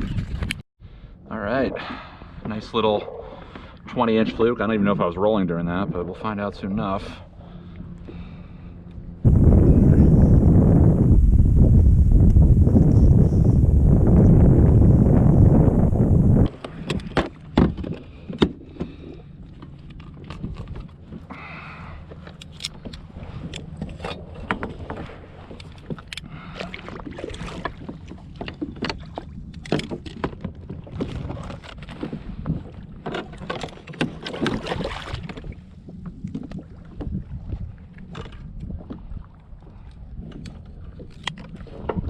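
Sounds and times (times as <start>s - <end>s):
low hum: 0.0s - 28.4s.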